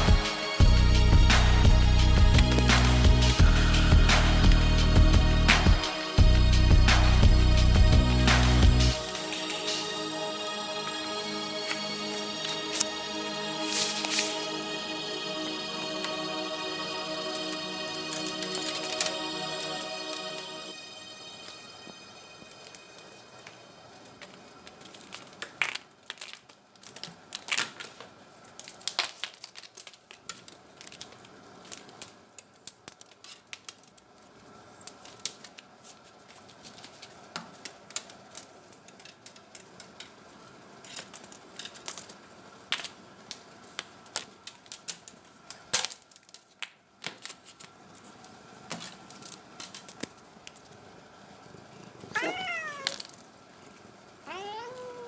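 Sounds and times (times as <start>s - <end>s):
cat meowing: 52.1s - 53.1s, 54.2s - 55.0s.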